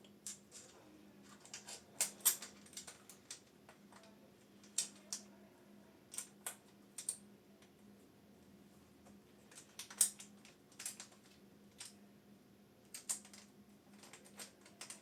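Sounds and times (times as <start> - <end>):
faint steady hum: 0.0 - 15.0
metal parts clicking and tapping: 1.3 - 5.2, 12.9 - 15.0.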